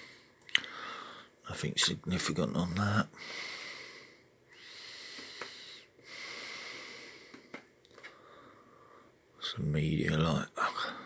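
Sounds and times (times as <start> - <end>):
man breathing audibly: 0.0 - 1.4, 3.1 - 9.2.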